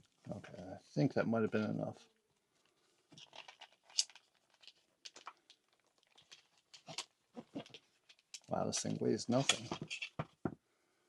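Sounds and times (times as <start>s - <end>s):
plastic packaging crinkling: 2.5s - 10.2s.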